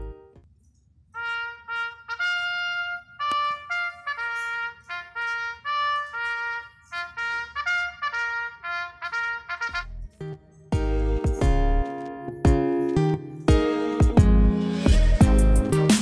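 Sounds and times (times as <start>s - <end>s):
solo trumpet playing: 1.2s - 10.0s.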